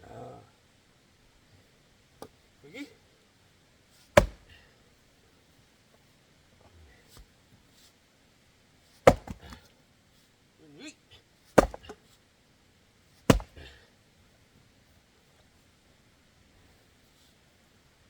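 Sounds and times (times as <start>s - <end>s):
wood knocking: 4.2s - 4.5s, 9.1s - 9.6s, 11.6s - 12.0s, 13.3s - 13.6s
axe chopping log: 4.2s - 4.7s, 9.0s - 9.7s, 11.6s - 12.0s, 13.3s - 13.8s.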